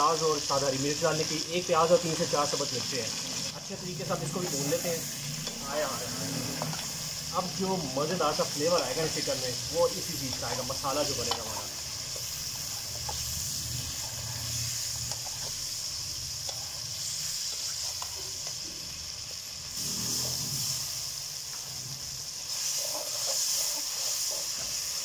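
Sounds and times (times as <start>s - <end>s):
chicken sizzling in hot oil: 0.0s - 25.0s.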